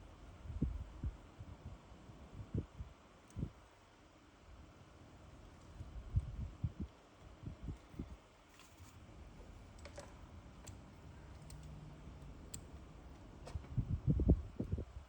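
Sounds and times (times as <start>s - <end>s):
low steady hum: 0.0s - 15.0s
faint light clicks and ticks: 9.7s - 13.8s.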